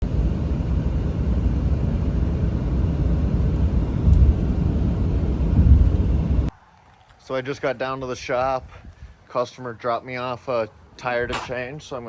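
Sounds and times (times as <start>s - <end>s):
vehicle rumble in motion: 0.0s - 6.6s.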